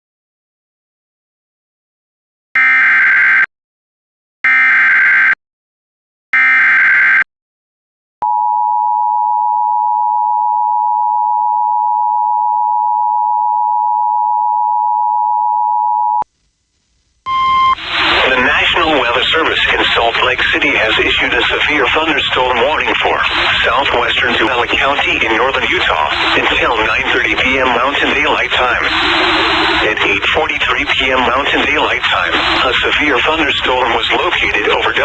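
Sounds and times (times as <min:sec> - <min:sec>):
two-tone attention signal: 0:17.3 - 0:18.5
digital header data bursts: 0:17.3 - 0:35.0.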